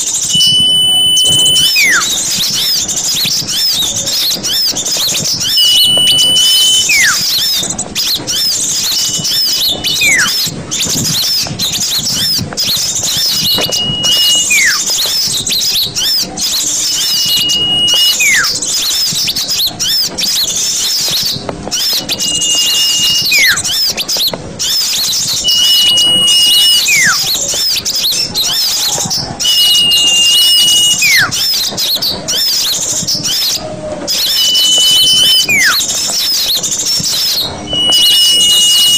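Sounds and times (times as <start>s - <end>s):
whistle sliding downward: 0.0s - 3.7s, 4.4s - 11.4s, 13.0s - 18.6s, 21.8s - 24.0s, 24.7s - 27.7s, 28.5s - 31.6s, 34.1s - 38.9s
small birds chirping: 0.0s - 38.9s.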